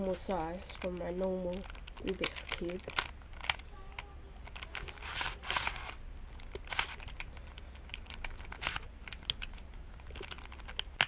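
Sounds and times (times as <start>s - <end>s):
plastic puzzle cube clicking: 0.8s - 11.0s.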